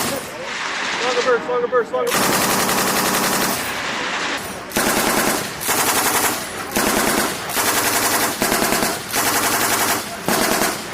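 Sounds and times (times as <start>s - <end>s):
machine gun bursts: 2.1s - 3.8s, 4.7s - 10.9s.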